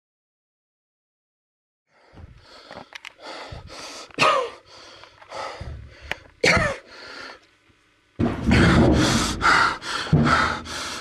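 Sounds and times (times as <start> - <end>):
man gasping: 2.0 - 7.5, 8.5 - 11.0
man coughing: 4.2 - 4.6, 6.4 - 6.9.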